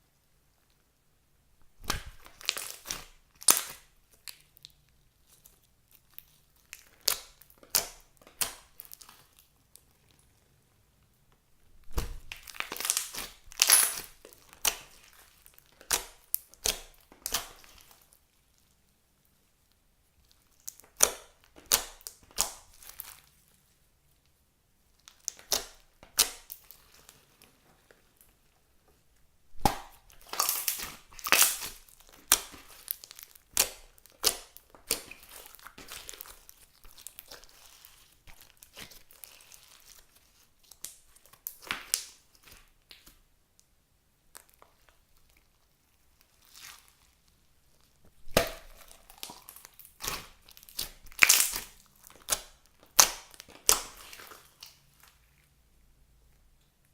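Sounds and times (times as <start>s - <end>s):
slime crackling and popping: 1.6s - 10.3s, 11.8s - 18.8s, 19.7s - 23.5s, 24.9s - 28.4s, 29.5s - 43.3s, 44.3s - 55.5s.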